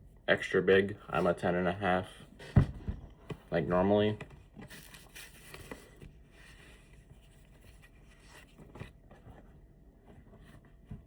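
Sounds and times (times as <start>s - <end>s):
faint rustling handling: 1.0s - 11.0s.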